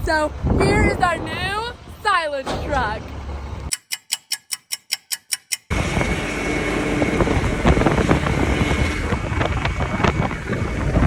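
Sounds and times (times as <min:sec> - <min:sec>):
sharp clicks: 0:03.6 - 0:05.7.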